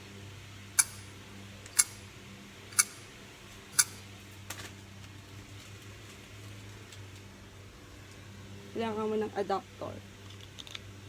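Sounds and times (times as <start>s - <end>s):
steady low hum: 0.0s - 10.3s
sharp clicks: 0.8s - 4.1s.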